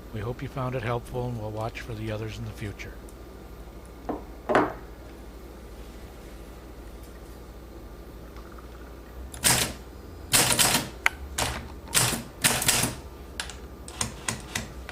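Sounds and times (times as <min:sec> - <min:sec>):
manual typewriter keys clacking: 0:09.4 - 0:13.0.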